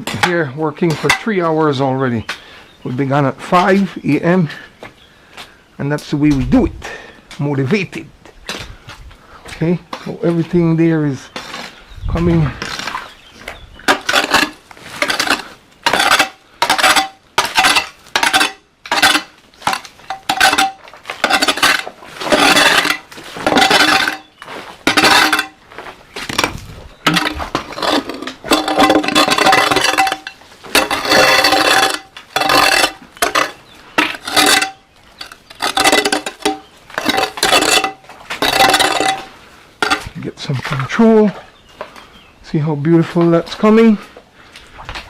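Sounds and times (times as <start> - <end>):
metal tool scraping stony soil: 11.1 - 41.0.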